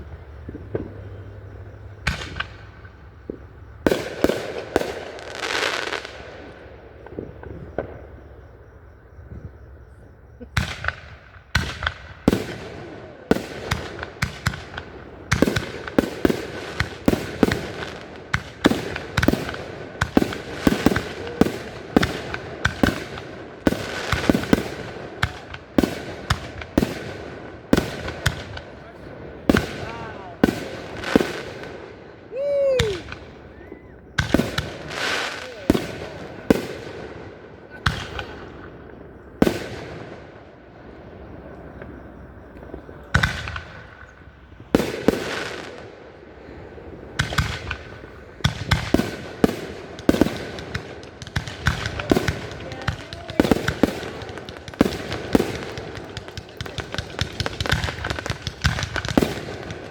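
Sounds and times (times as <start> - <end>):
rapid barrage of firework bangs: 0.0 - 8.1, 10.5 - 40.6, 42.7 - 59.9
fireworks booming: 0.0 - 59.9
firework hiss: 27.8 - 37.2.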